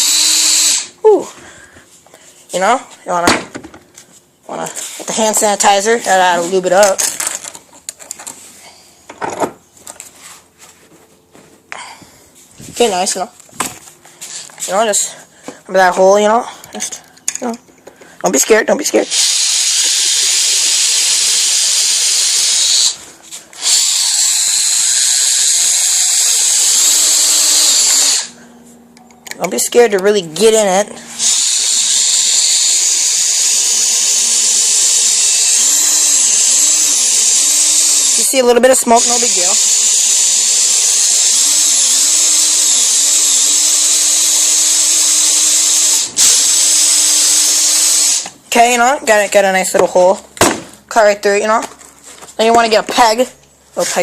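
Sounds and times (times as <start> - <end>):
electric drill boring into metal: 23.6 - 28.4, 31.1 - 38.3, 39.0 - 48.3.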